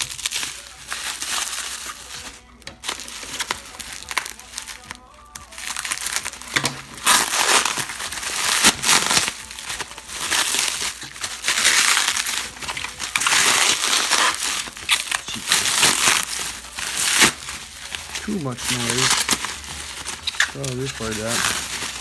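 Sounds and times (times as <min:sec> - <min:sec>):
bubble wrap crinkling: 0:00.0 - 0:22.0.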